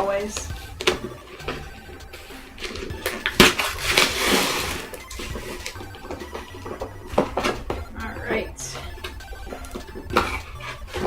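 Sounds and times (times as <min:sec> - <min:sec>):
chiptune background music: 0:00.0 - 0:11.0
package tearing and crinkling: 0:02.6 - 0:05.8
sharp crack: 0:02.7 - 0:05.8.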